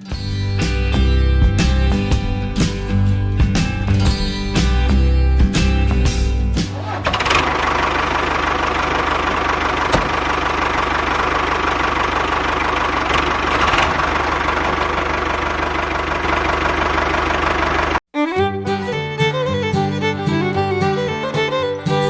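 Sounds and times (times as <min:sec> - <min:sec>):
tractor engine running: 0:00.6 - 0:18.1.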